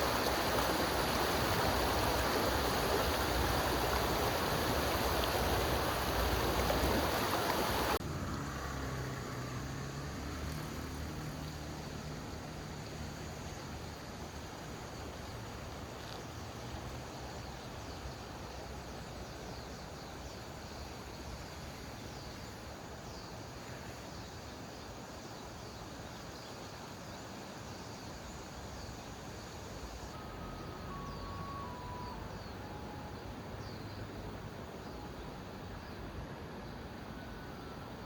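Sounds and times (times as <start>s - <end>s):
creek water rushing: 0.0s - 38.0s
faint high chirping: 29.8s - 36.2s.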